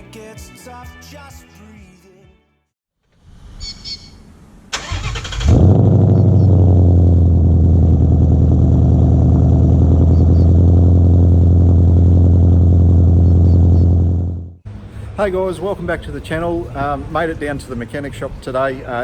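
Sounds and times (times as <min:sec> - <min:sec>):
car engine idling: 0:04.9 - 0:16.1.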